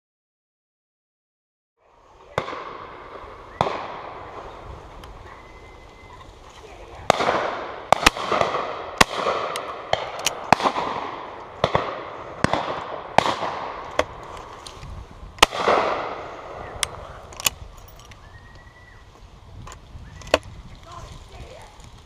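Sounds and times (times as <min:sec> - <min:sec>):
shotgun shots echoing: 0:02.3 - 0:04.7, 0:07.0 - 0:14.2, 0:15.4 - 0:17.6.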